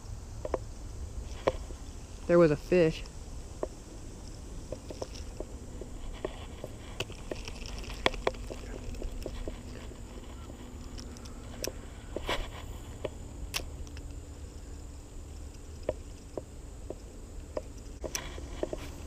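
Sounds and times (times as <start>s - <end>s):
steady low rumble: 0.0s - 19.0s
small clicks and taps: 6.2s - 9.6s, 15.3s - 18.9s.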